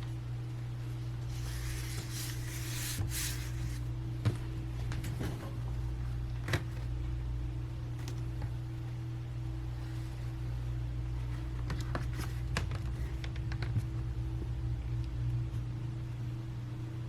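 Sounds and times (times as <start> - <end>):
steady electrical hum: 0.0 - 17.0.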